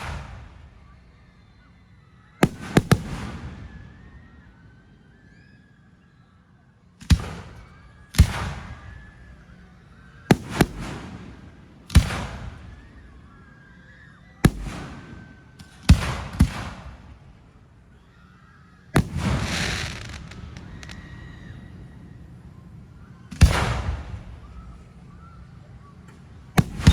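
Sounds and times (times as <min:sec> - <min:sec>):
fireworks bangs: 0:00.0 - 0:00.7, 0:02.4 - 0:04.4, 0:07.0 - 0:09.6, 0:10.2 - 0:13.0, 0:14.4 - 0:17.4, 0:18.9 - 0:22.0, 0:23.3 - 0:24.8, 0:26.1 - 0:26.9.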